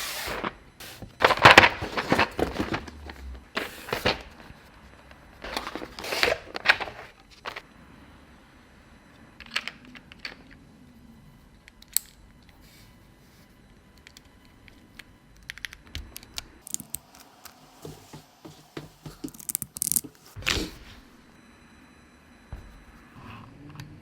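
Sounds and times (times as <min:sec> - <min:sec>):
packaging rustling: 0:00.0 - 0:04.6, 0:05.4 - 0:07.6.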